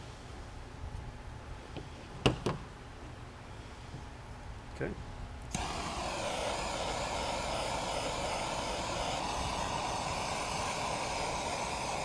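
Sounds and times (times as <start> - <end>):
gas torch burning: 5.5 - 12.0.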